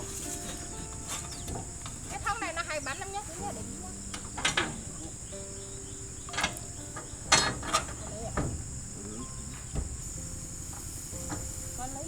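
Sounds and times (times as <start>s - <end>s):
crickets chirping: 0.0s - 12.0s
firewood crackling and popping: 0.0s - 12.0s.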